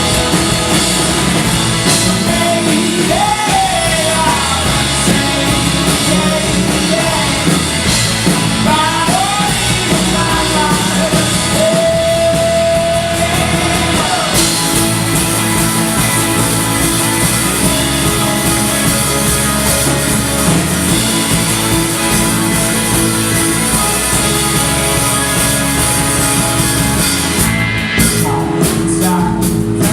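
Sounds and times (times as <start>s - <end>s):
live rock band playing: 0.0s - 29.9s
person singing: 1.8s - 15.0s, 28.1s - 29.9s.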